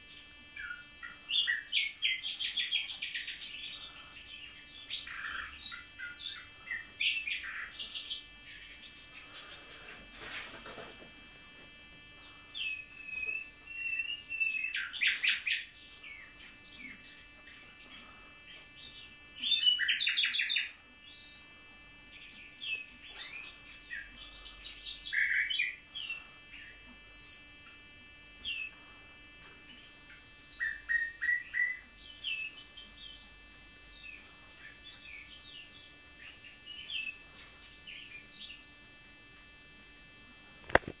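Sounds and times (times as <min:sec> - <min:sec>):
nightingale song: 0:00.0 - 0:09.0, 0:12.6 - 0:21.5, 0:28.2 - 0:39.0.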